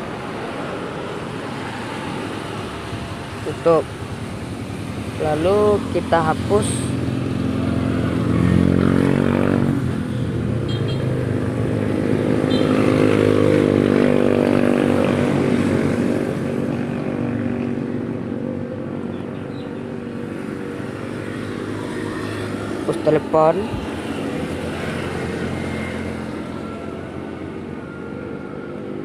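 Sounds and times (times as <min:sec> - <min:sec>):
vehicle engine revving: 0:04.6 - 0:10.0.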